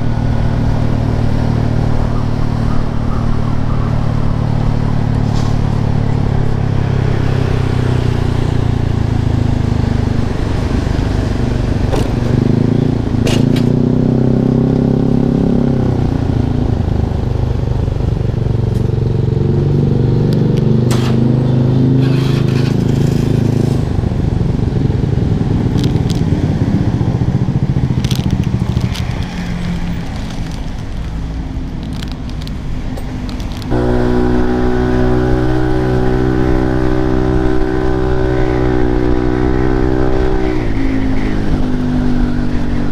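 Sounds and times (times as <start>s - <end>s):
scooter engine running: 33.3s - 40.4s.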